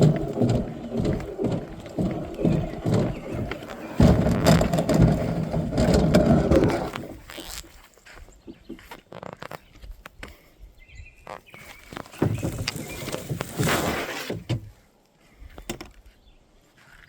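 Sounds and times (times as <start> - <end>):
kayak hull and paddle knocking: 0.0 - 7.6, 11.9 - 14.7.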